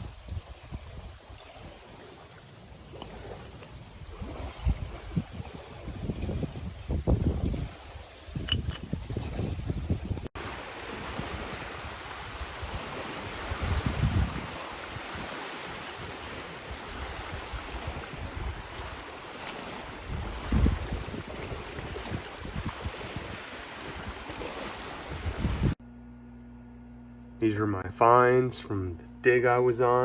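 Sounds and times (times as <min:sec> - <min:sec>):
wind gusts buffeting microphone: 0:00.0 - 0:01.9, 0:03.9 - 0:25.8.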